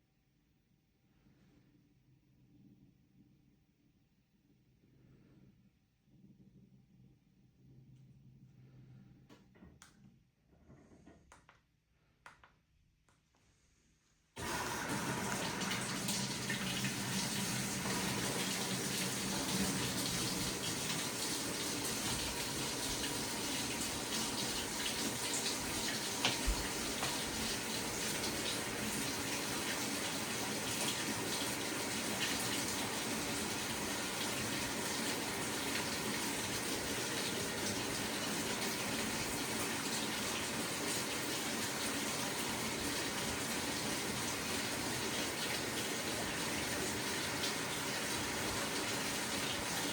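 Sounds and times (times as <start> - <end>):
water pouring into washing machine: 14.4 - 49.9.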